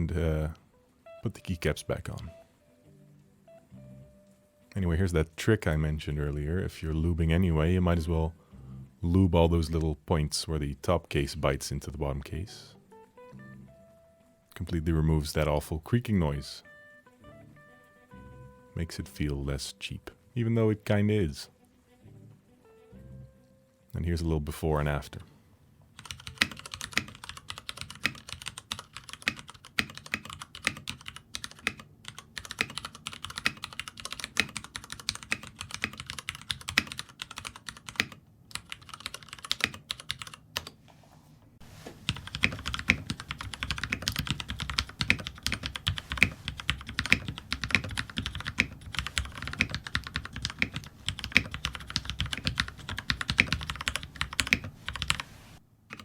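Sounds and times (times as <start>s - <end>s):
mechanical keyboard typing: 26.0s - 40.8s, 42.1s - 55.2s.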